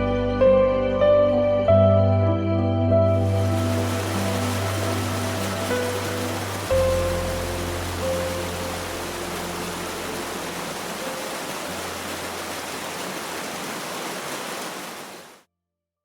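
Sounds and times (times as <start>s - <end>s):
steady rushing noise: 3.2s - 15.4s.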